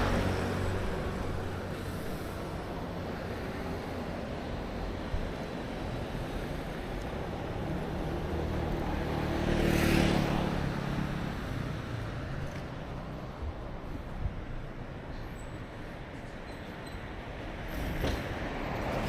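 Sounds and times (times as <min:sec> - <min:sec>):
motor vehicle passing by: 0:00.0 - 0:02.4, 0:07.5 - 0:12.2.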